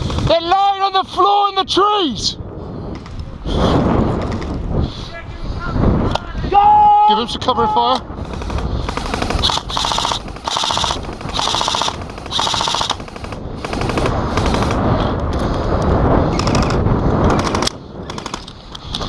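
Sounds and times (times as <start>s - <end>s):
airsoft rifle firing full-auto: 8.2s - 14.8s.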